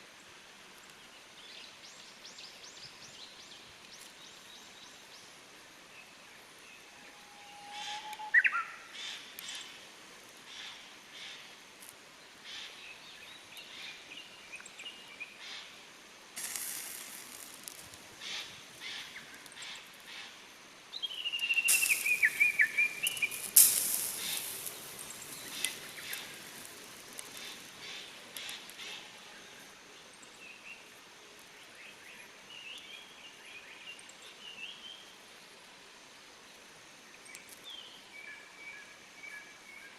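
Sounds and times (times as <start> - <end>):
songbirds singing: 12.2 - 15.8, 16.4 - 35.2, 36.5 - 39.9
charcoal fire crackling and popping: 16.4 - 20.1, 21.3 - 28.9
loud hissing: 16.4 - 20.3, 21.2 - 28.9.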